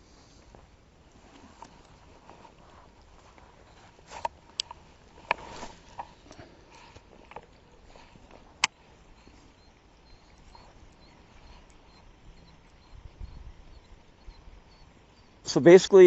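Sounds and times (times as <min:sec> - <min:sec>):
short rustle: 0:00.0 - 0:09.6.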